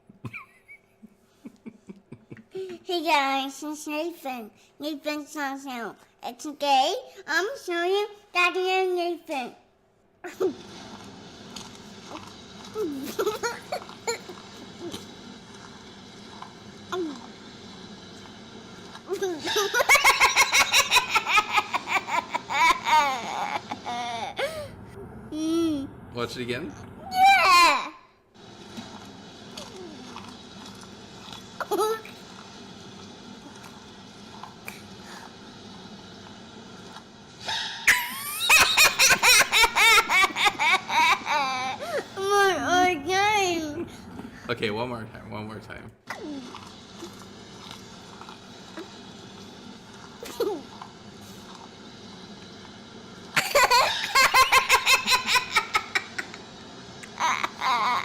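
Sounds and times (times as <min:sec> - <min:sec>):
steady background hum: 0:00.0 - 0:58.0
child laughing and shrieking: 0:19.3 - 0:24.7, 0:27.0 - 0:28.1, 0:37.9 - 0:43.8, 0:57.1 - 0:58.0.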